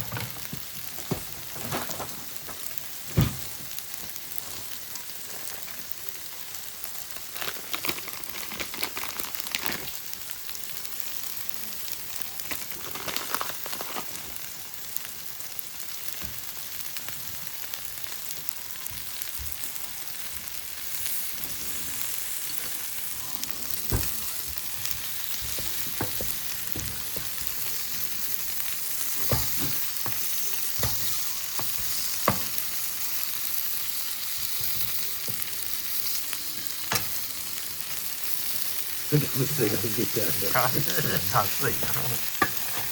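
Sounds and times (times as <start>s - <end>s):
noodles sizzling in a pan: 0.0s - 42.9s
stirring in a pan: 37.9s - 42.9s.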